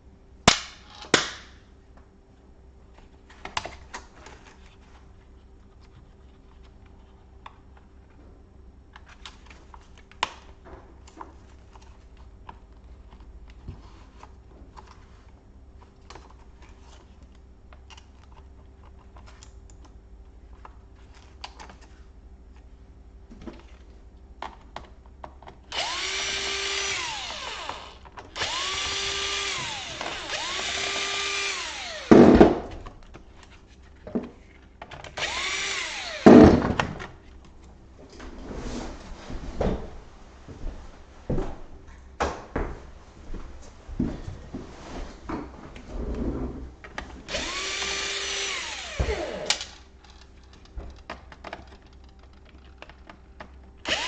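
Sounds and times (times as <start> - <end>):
electric screwdriver motor whining: 25.7 - 32.3, 35.2 - 36.4, 47.3 - 49.8.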